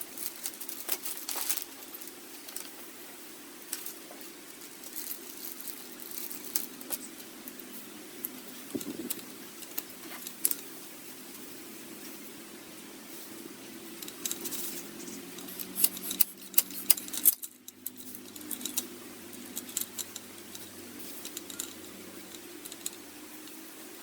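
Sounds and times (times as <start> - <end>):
steady low hum: 0.0 - 24.0
light metallic clicks and clinks: 14.0 - 23.6.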